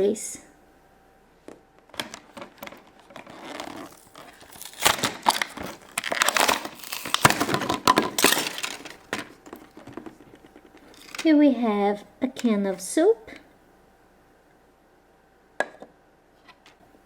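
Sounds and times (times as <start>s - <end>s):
plastic pieces clicking: 2.0s - 10.1s
plastic packaging crinkling: 2.0s - 11.3s.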